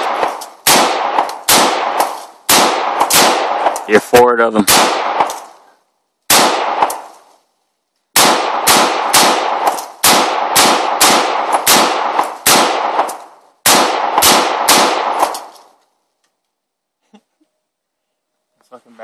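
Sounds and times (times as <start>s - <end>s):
rifle shots echoing: 0.0s - 5.7s, 6.3s - 7.3s, 8.1s - 15.8s.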